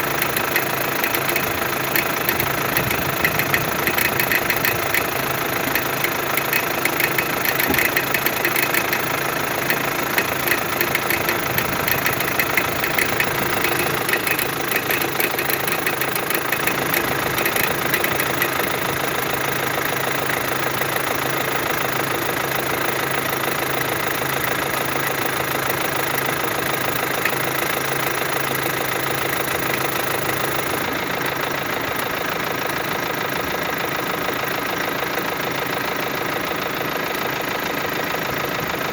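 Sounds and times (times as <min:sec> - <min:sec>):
diesel engine idling: 0:00.0 - 0:21.7
rapid engine crackling: 0:00.0 - 0:31.2.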